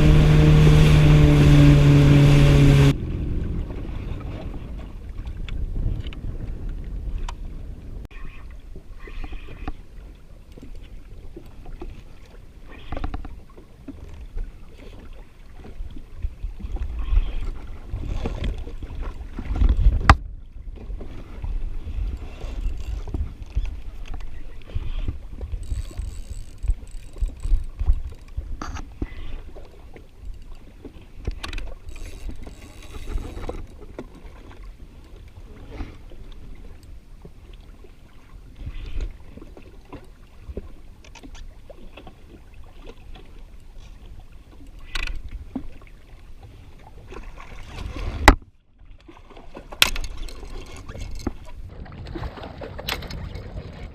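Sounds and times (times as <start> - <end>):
wind buffeting microphone: 0.0 - 8.1, 16.2 - 29.0
water slapping against hull: 0.0 - 53.9.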